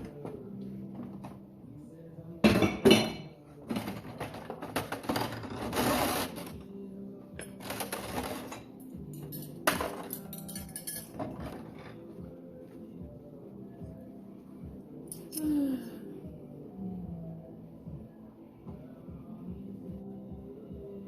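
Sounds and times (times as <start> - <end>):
background music: 0.0 - 21.0
dishes and cutlery clinking: 2.4 - 6.3, 7.4 - 12.1.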